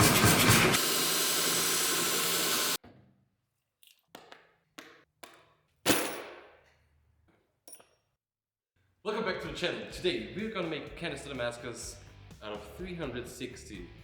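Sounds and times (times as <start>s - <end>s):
workshop power tool running: 0.0s - 2.8s.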